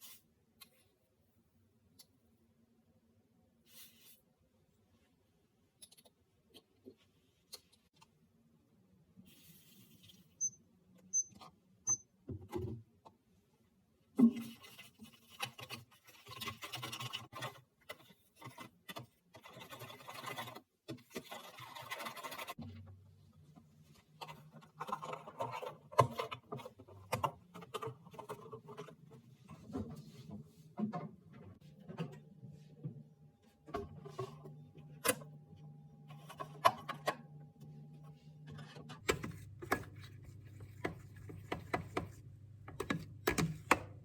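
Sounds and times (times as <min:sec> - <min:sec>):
short electronic beeps: 0:10.4 - 0:12.0.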